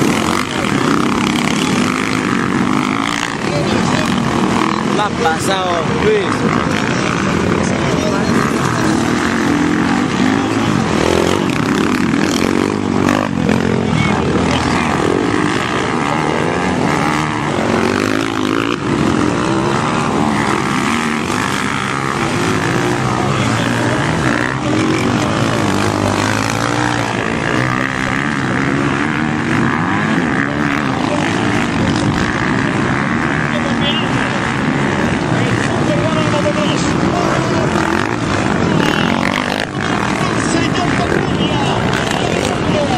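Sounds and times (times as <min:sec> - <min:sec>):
motorcycle engines revving: 0:00.0 - 0:42.9.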